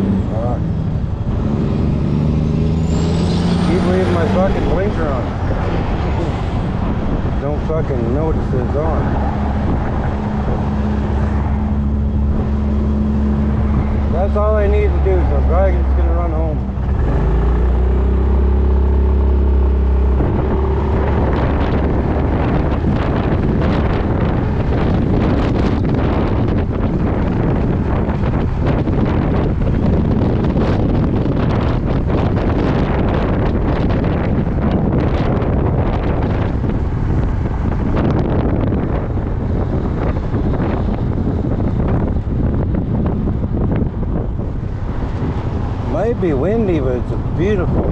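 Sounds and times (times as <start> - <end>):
road noise: 0.0 - 47.9
wind buffeting microphone: 0.0 - 47.9.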